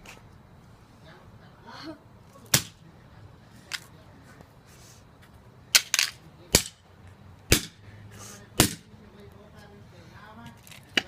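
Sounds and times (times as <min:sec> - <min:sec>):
sharp pops or cracks: 0:07.5 - 0:07.8.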